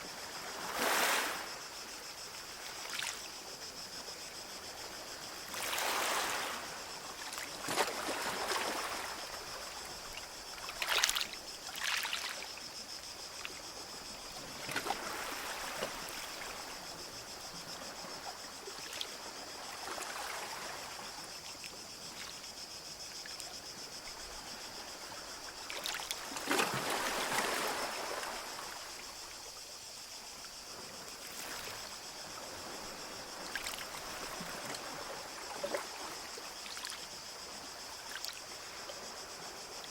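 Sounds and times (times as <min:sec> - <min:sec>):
steady high-pitched hiss: 0:00.0 - 0:39.9
small waves washing up beach: 0:00.1 - 0:01.7, 0:05.4 - 0:12.6, 0:24.4 - 0:29.1.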